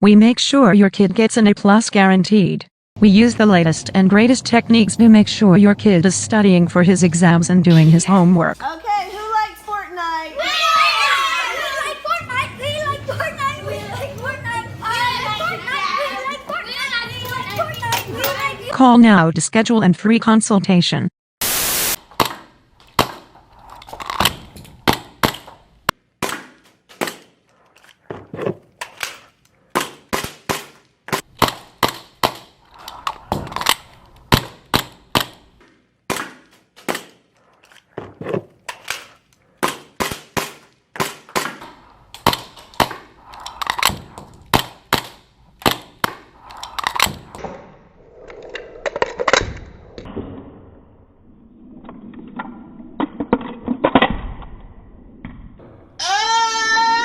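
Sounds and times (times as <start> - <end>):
airsoft guns firing: 29.7 - 32.6, 39.6 - 43.1.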